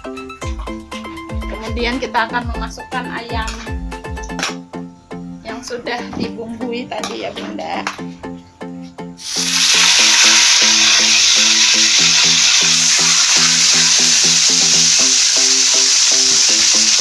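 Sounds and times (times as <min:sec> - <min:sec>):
light plucked background music: 0:00.0 - 0:17.0
chicken sizzling in hot oil: 0:09.2 - 0:17.0.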